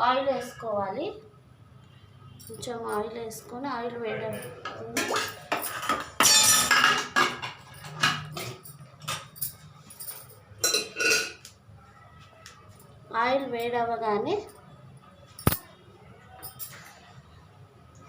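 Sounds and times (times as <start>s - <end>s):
kitchenware clattering on a pan: 4.4s - 9.4s, 10.6s - 11.5s.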